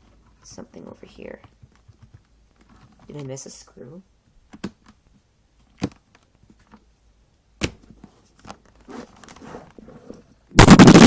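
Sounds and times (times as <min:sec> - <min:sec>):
plastic scraping and crackling: 0:08.4 - 0:11.0.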